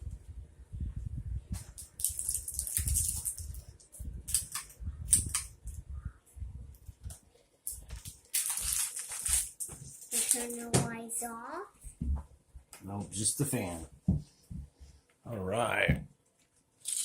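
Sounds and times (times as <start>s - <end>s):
plastic bricks rustling and clicking: 1.7s - 5.5s, 7.7s - 10.6s.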